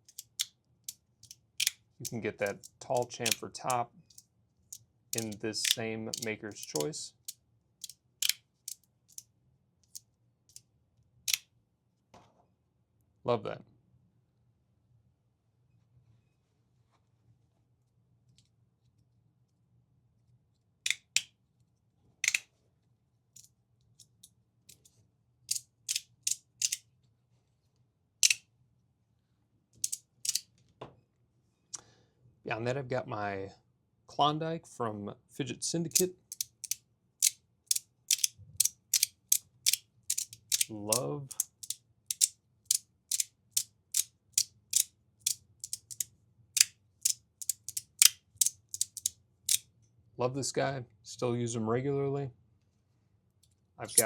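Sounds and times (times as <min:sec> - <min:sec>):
magnetic plates snapping: 0:01.2 - 0:03.8, 0:05.2 - 0:06.9, 0:36.0 - 0:36.8, 0:38.1 - 0:42.3, 0:45.6 - 0:46.0, 0:47.0 - 0:49.1.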